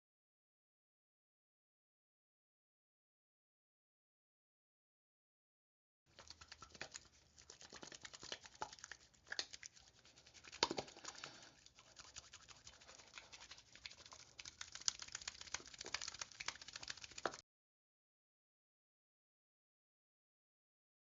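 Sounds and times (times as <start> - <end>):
crackling and pattering clicks: 10.5 - 11.8, 12.8 - 17.4.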